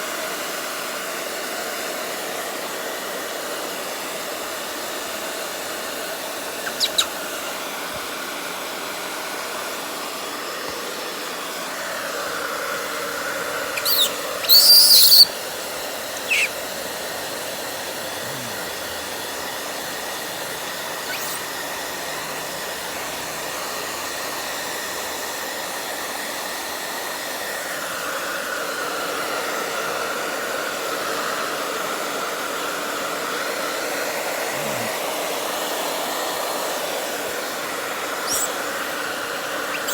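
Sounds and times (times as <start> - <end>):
baby monkey squealing: 6.6 - 7.3, 13.6 - 17.3, 18.1 - 24.2, 34.6 - 34.9, 38.2 - 39.0, 39.6 - 39.9.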